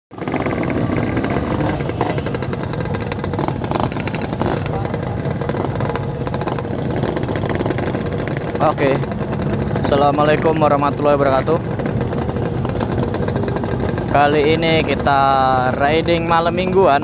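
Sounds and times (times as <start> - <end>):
two-stroke motorcycle engine running: 0.1 - 17.0
voices talking: 4.2 - 6.0.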